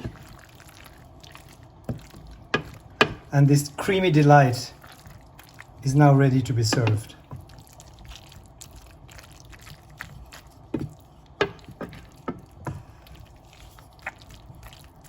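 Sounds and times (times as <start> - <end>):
wet stirring of sauced pasta: 0.0 - 15.0
utensil tapping against pan: 2.5 - 3.3, 6.7 - 7.1, 10.8 - 12.4.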